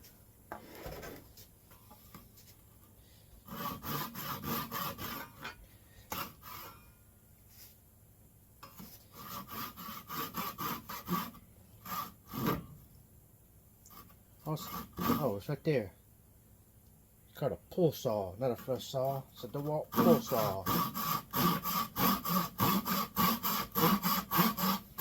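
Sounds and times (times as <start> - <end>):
hand saw cutting wood: 3.4 - 6.8, 8.7 - 12.7, 13.9 - 15.4, 18.5 - 25.0.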